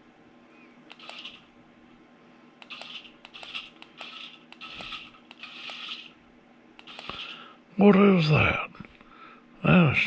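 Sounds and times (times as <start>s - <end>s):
sharp clicks: 0.9s - 1.4s, 6.8s - 7.2s
toy motor whirring and rattling: 0.9s - 1.5s, 2.6s - 6.2s, 6.8s - 7.5s.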